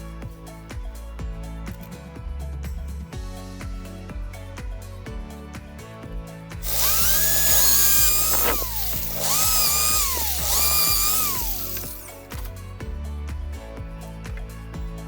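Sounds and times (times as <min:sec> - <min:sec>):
background music: 0:00.0 - 0:15.0
electric power tool motor whine: 0:06.6 - 0:12.5.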